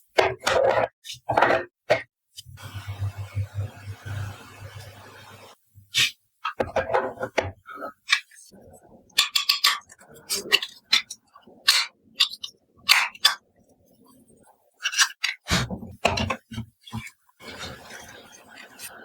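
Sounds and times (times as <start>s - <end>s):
plastic pieces clicking and clinking: 9.2s - 13.4s.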